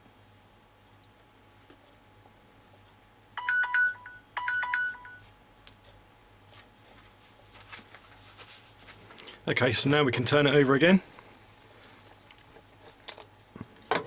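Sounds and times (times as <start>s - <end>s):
timer alarm beeps: 3.4s - 5.2s.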